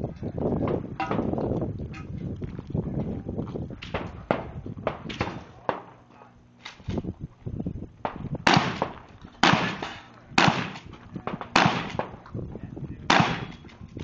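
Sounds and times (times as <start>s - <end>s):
gunshots with ringing tail: 3.9s - 6.1s, 8.0s - 12.2s, 13.1s - 13.7s.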